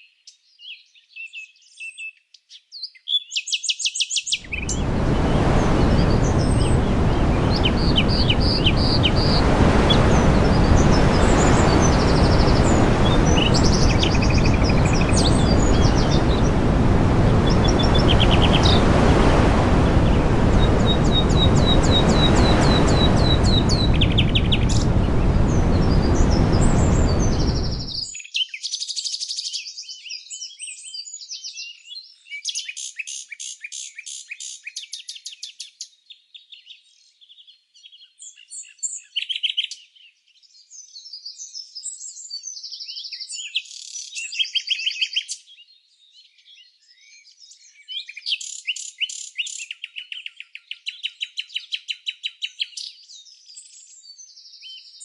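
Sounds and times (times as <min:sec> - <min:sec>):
songbirds chirping and singing: 0:00.0 - 0:04.9, 0:20.6 - 0:55.0
loud steady rushing noise: 0:04.5 - 0:28.0.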